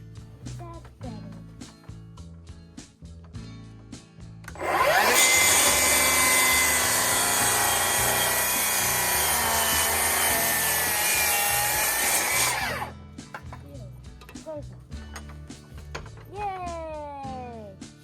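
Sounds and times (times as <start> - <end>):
power tool cutting wood: 4.6 - 12.9.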